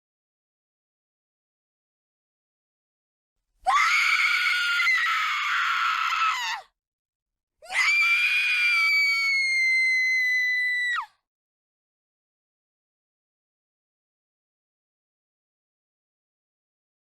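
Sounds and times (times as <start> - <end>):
woman screaming: 3.7 - 6.6.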